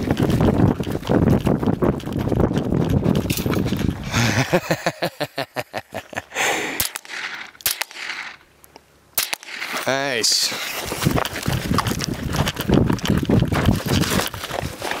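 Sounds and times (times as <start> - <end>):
running footsteps: 0.0 - 4.8, 10.5 - 15.0
wind and movement rumble: 0.0 - 6.2, 6.9 - 15.0
sharp gunshot cracks: 6.7 - 8.4, 9.2 - 9.9.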